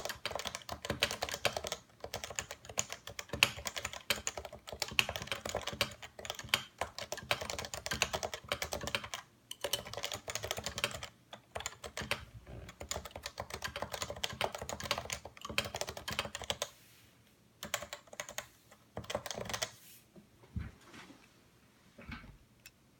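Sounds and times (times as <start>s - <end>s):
typing on keyboard: 0.0s - 16.7s, 17.6s - 19.7s.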